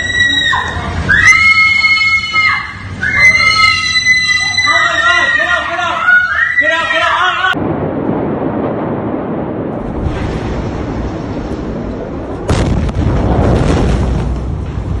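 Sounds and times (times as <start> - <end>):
explosion boom: 7.5 - 15.0
loud dense rumble: 7.5 - 15.0.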